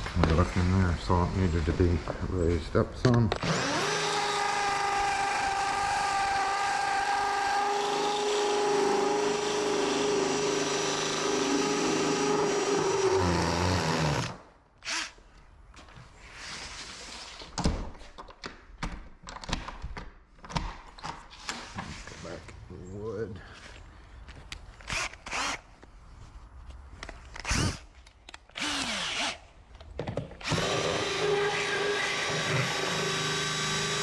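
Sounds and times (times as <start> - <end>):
cordless drill running: 3.4 - 15.2, 24.9 - 25.6, 28.6 - 29.4, 30.4 - 34.0.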